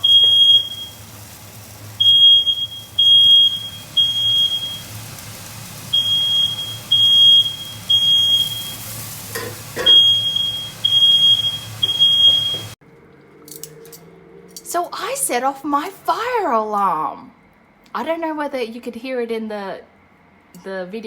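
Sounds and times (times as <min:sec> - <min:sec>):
smoke alarm beeping: 0:00.0 - 0:12.8.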